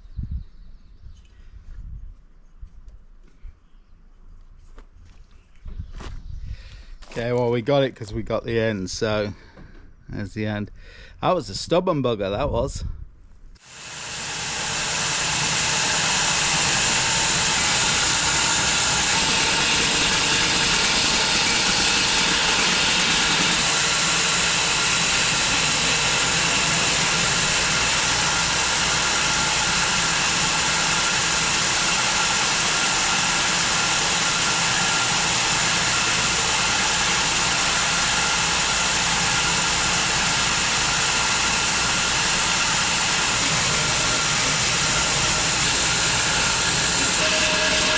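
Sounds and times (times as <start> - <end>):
bandsaw mill sawing log: 13.6 - 47.9.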